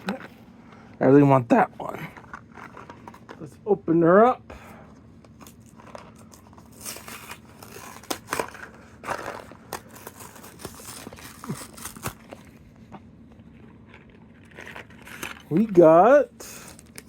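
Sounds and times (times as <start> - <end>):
cardboard box tearing: 6.4 - 12.5.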